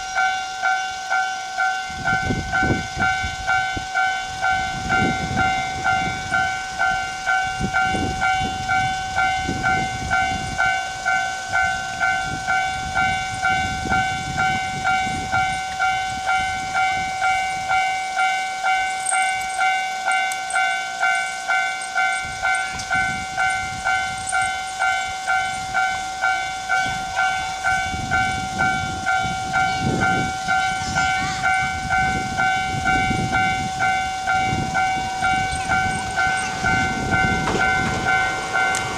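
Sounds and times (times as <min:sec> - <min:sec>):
level crossing warning bell: 0:00.0 - 0:38.9
low rumbling: 0:22.1 - 0:38.9.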